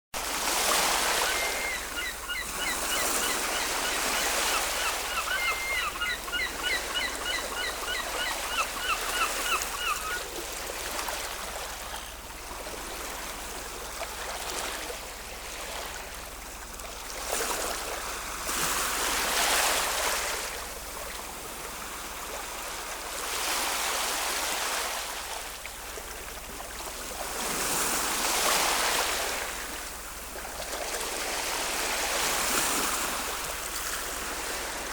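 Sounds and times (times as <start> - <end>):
ocean waves washing in: 0.2 - 7.0
quick repeated bird calls: 0.8 - 10.2.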